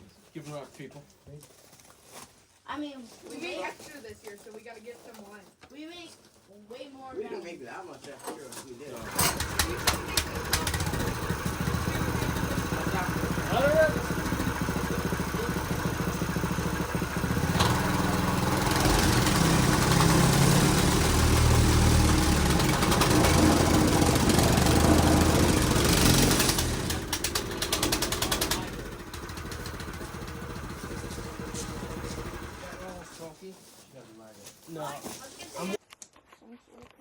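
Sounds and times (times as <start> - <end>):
engine running: 9.0 - 33.2.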